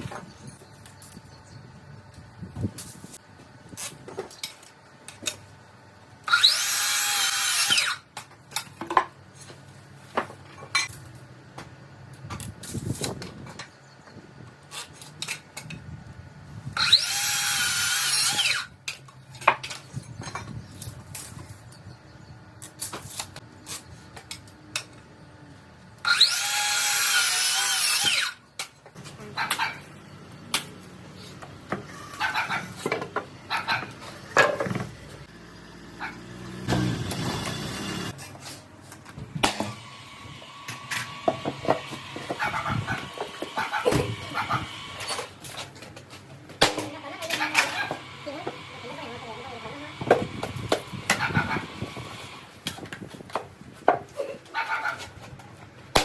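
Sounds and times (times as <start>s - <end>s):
power drill driving into wood: 6.3s - 8.0s.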